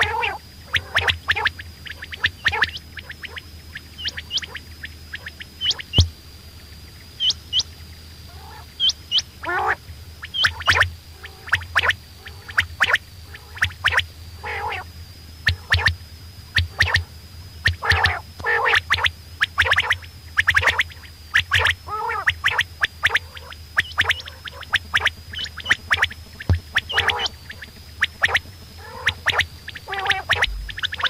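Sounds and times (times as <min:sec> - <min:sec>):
low warbling calls: 0:00.0 - 0:06.1, 0:21.4 - 0:31.0
quails calling: 0:00.0 - 0:06.1, 0:07.2 - 0:07.7, 0:08.3 - 0:15.9, 0:16.5 - 0:31.0
sharp clicks: 0:30.3 - 0:31.0.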